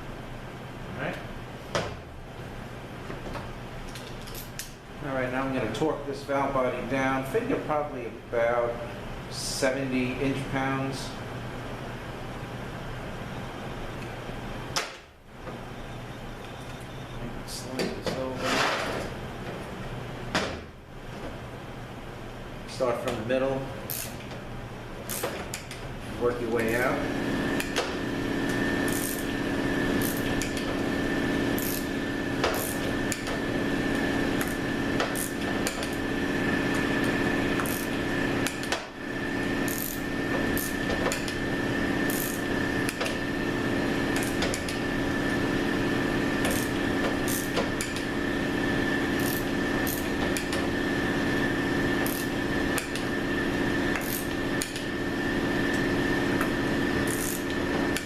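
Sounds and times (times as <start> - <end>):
steady hum: 0.0 - 58.0
torque wrench ratchet clicking: 23.9 - 24.2, 28.9 - 29.2, 31.6 - 31.9, 34.4 - 35.9, 37.6 - 38.7, 39.7 - 40.0, 42.1 - 43.1, 46.4 - 48.0, 49.2 - 50.6, 52.0 - 53.0, 53.9 - 54.9, 57.1 - 58.0.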